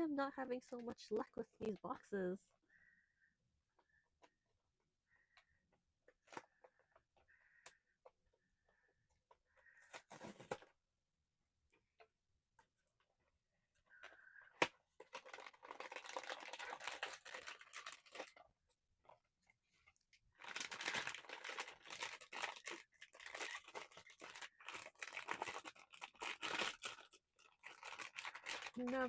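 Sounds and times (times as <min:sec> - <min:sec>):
packaging torn and crinkled: 0:15.0 - 0:18.4, 0:20.4 - 0:29.0.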